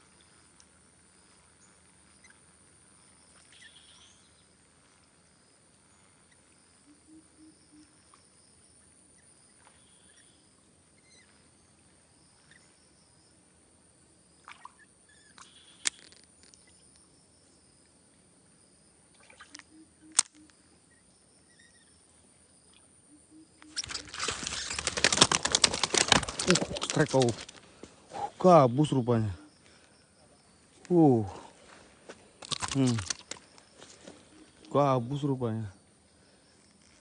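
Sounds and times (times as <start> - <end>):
sharp clicks: 19.5 - 20.5, 23.6 - 27.6, 32.4 - 33.7.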